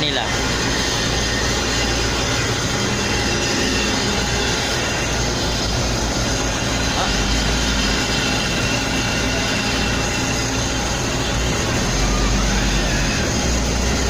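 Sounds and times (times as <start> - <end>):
heavy machinery running: 0.0 - 14.0.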